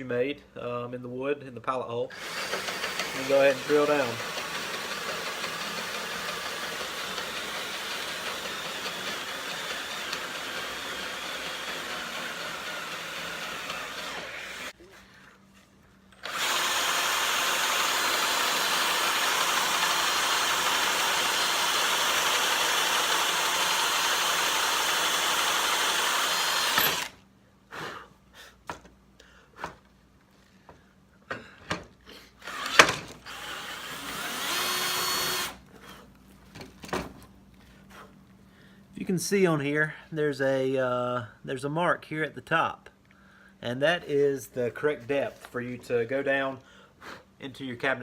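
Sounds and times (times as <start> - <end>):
power drill boring into wood: 2.1 - 14.8, 16.2 - 27.2, 32.4 - 35.6.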